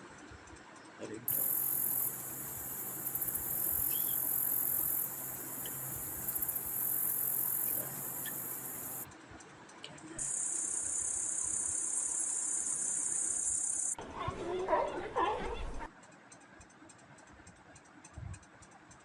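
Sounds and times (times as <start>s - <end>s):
high-pitched insect trilling: 1.3s - 9.1s, 10.2s - 14.0s.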